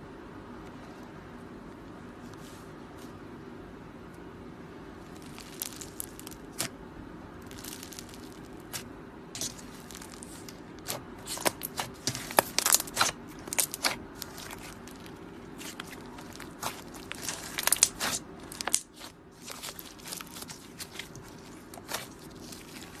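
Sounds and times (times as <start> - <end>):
slime crackling and popping: 5.1 - 6.7, 7.4 - 23.0.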